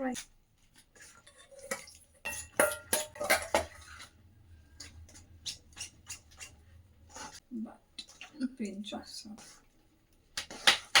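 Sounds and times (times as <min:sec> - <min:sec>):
utensils clinking on dishes: 0:01.3 - 0:04.1.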